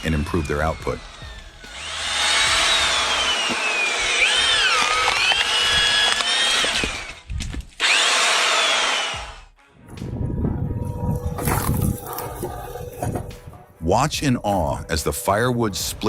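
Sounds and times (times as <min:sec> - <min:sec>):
electric drill motor whine: 0:00.0 - 0:09.5.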